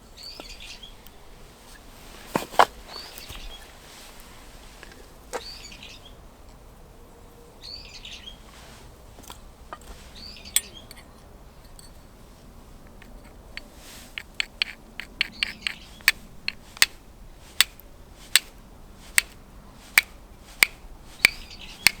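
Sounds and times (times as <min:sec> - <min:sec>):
bird chirping: 0:00.0 - 0:01.8, 0:02.8 - 0:03.7, 0:05.3 - 0:06.2, 0:07.6 - 0:08.4, 0:10.1 - 0:11.2, 0:14.6 - 0:16.8, 0:21.2 - 0:22.0.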